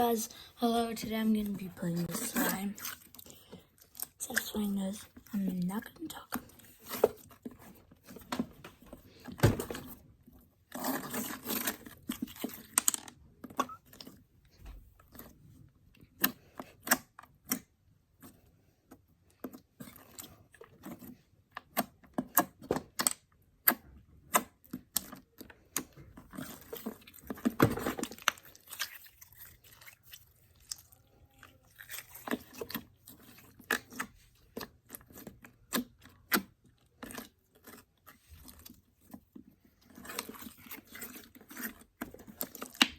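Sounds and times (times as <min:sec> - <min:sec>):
slime squelching by hand: 0:00.0 - 0:08.3, 0:23.7 - 0:42.9.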